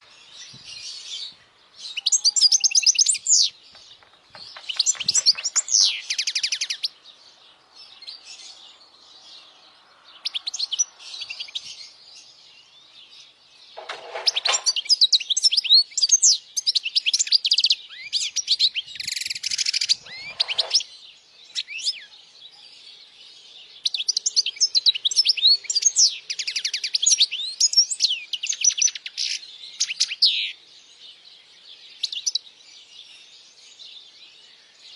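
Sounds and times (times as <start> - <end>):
bird twittering trills and chirps: 0.0 - 34.9
harsh scratchy bird notes: 19.6 - 20.8.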